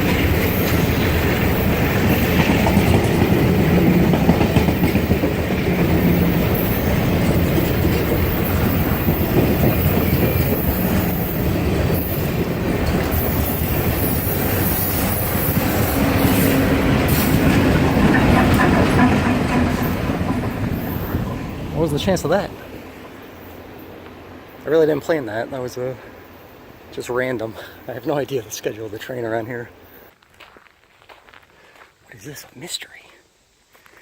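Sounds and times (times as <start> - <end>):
train wheels rumbling on rails: 0.0 - 29.8
high wheel squeals: 5.9 - 22.4.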